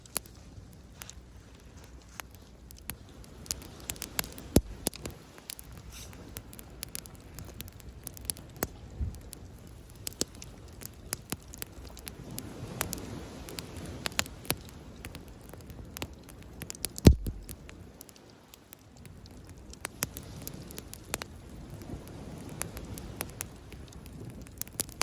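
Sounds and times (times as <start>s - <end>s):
wood fire crackling and popping: 0.0s - 25.0s
low steady rumble: 4.5s - 4.9s, 17.0s - 17.6s.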